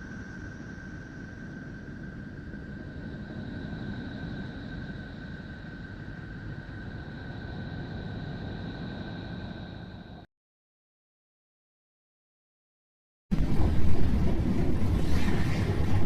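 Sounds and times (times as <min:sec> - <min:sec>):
low rumbling noise: 0:13.3 - 0:16.0.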